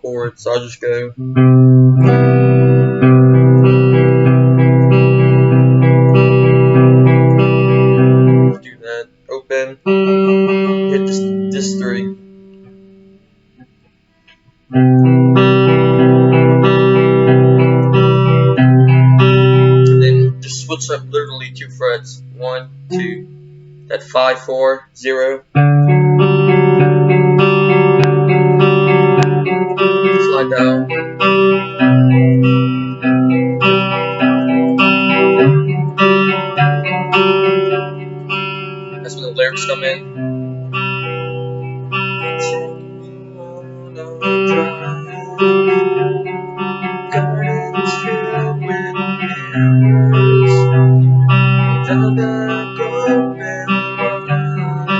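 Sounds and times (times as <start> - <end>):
guitar picked pattern: 0.0 - 54.9
finger clicks on guitar strings: 1.2 - 8.5, 27.4 - 38.4.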